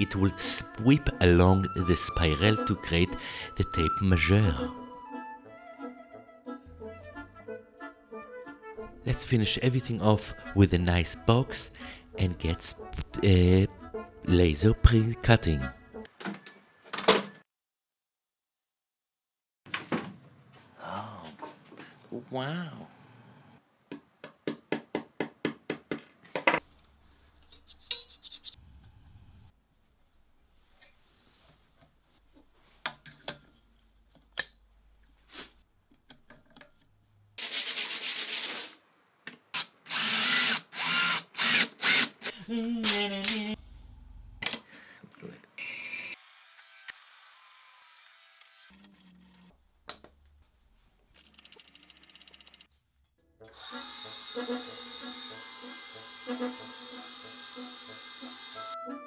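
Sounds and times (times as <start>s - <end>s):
small power tool bursts: 45.6s - 48.8s, 53.5s - 58.7s.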